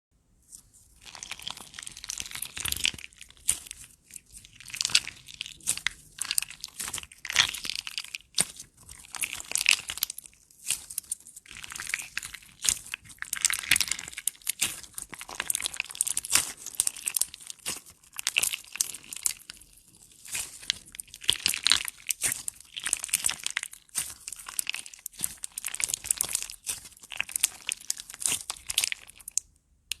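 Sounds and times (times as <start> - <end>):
slime crackling and crunching: 0.5 - 30.0.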